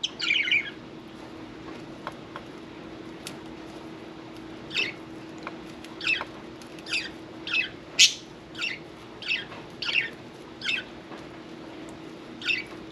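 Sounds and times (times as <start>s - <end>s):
budgerigar chirping: 0.0s - 0.8s, 6.9s - 10.9s
faint steady hum: 0.0s - 12.9s.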